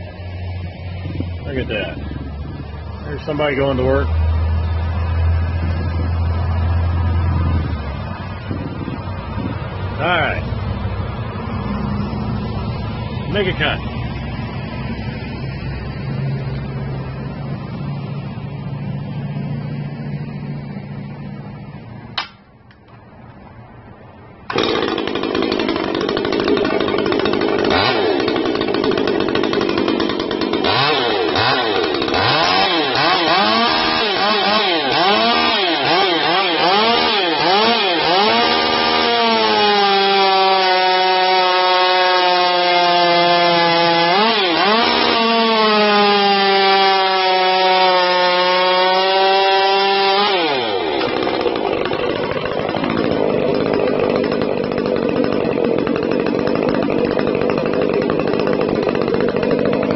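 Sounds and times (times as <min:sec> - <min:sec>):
sharp click: 0:22.2 - 0:23.0
chainsaw revving: 0:24.5 - 0:59.9.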